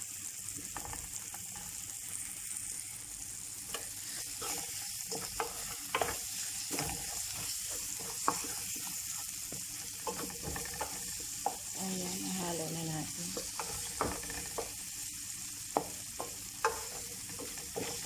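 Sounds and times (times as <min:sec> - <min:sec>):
frying pan sizzling: 0:00.0 - 0:18.0
spoon scraping a pan: 0:03.7 - 0:12.4, 0:13.1 - 0:15.0, 0:15.7 - 0:18.0.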